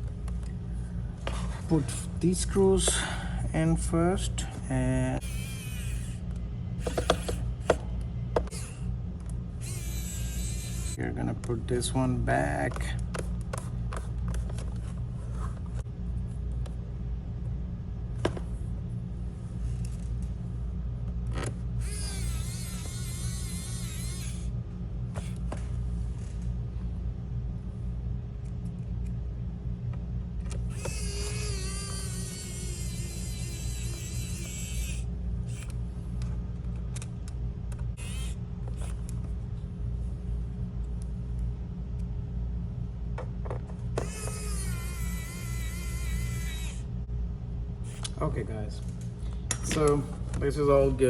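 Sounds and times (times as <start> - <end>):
steady low hum: 0.0 - 51.0
electric screwdriver whir: 5.2 - 6.2, 6.8 - 7.8, 8.5 - 8.8, 9.6 - 11.0, 21.8 - 24.5, 30.7 - 35.8, 38.0 - 39.0, 44.0 - 46.8
screwdriver clicking on screws: 6.8 - 7.8, 30.7 - 35.8
high wavering whine: 21.4 - 25.4, 30.4 - 36.2, 43.7 - 48.8.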